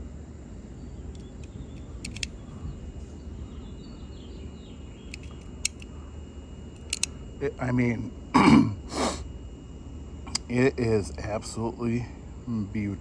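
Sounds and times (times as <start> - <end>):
short sharp clicks: 6.8 - 7.1.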